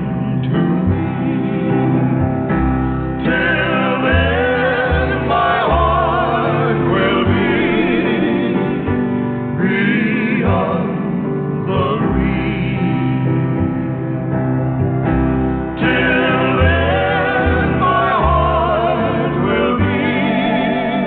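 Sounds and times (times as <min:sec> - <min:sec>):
choir-like backing voices: 0:00.0 - 0:14.4, 0:15.2 - 0:21.0
person singing with vibrato: 0:03.2 - 0:13.6, 0:15.8 - 0:21.0.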